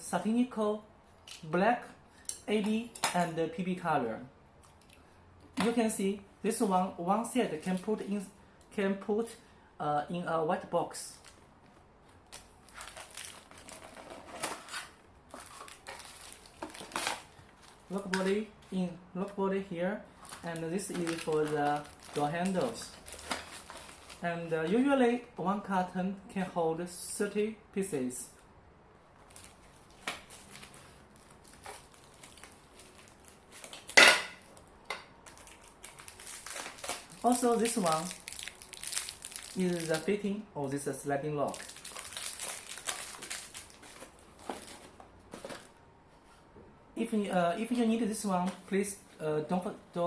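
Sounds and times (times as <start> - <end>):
packaging crinkling and rustling: 11.1 - 19.4, 20.1 - 24.9, 29.2 - 40.8, 41.4 - 45.8
packaging box rustling: 12.3 - 18.4, 20.2 - 24.2, 41.5 - 45.7.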